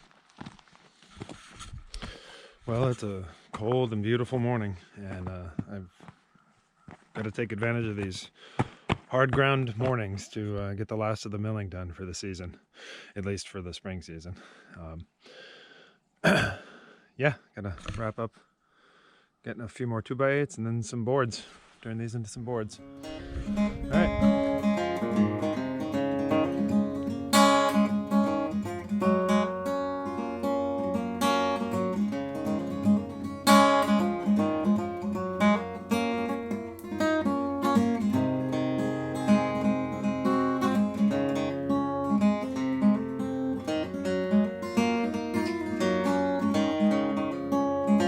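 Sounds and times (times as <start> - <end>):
acoustic guitar music: 22.7 - 48.0.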